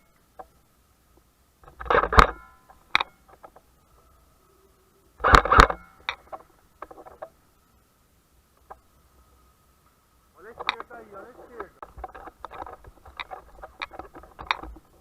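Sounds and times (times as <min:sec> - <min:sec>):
light clicks: 0:09.8 - 0:11.0.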